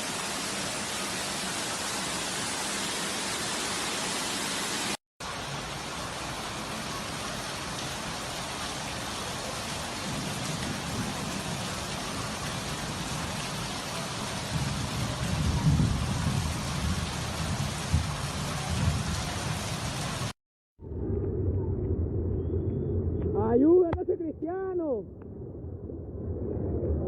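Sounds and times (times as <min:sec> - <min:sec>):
heavy rain falling: 0:04.6 - 0:20.4
low rumbling: 0:20.8 - 0:27.0.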